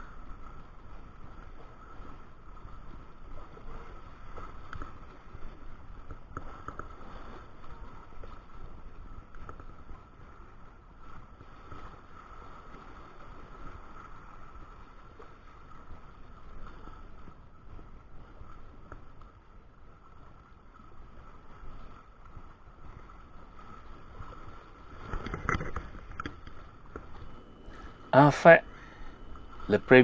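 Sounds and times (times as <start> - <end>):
river water flowing: 27.2 - 30.0.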